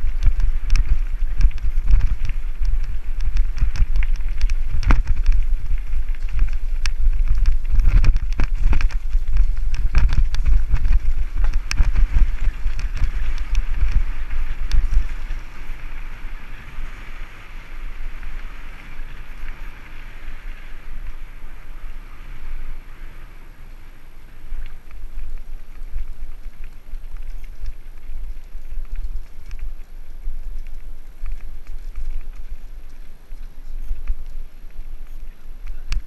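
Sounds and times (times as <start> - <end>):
bike rattling over bumps: 0.0 - 36.0
wind buffeting microphone: 0.0 - 36.0
tyres hissing on dirt: 11.0 - 24.9.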